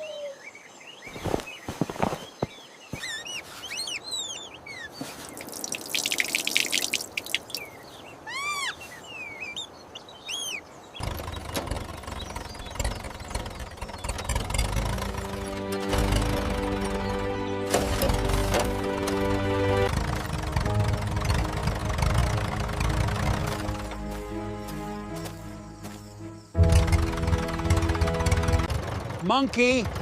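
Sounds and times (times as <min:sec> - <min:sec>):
birds chirping: 0:00.0 - 0:28.7
low engine rumble: 0:11.0 - 0:30.0.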